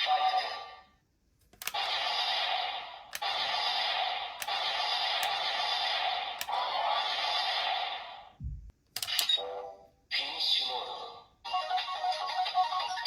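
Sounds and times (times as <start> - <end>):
sharp toy click: 1.5 - 1.9.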